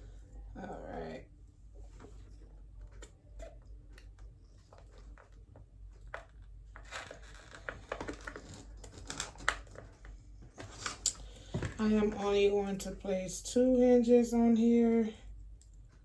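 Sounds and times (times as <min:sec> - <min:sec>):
plastic crinkling: 0:06.8 - 0:11.1.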